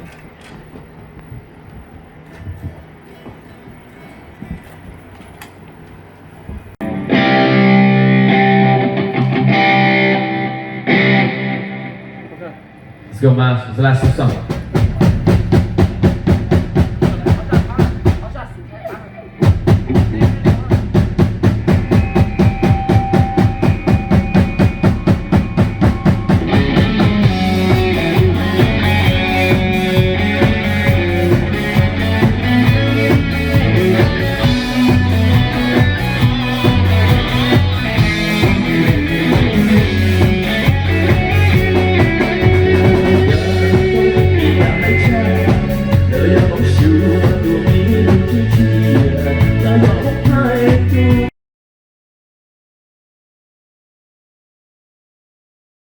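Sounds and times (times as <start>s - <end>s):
live rock band playing: 6.8s - 12.8s, 14.0s - 51.3s
fast drum beat: 14.0s - 18.6s, 19.4s - 51.3s.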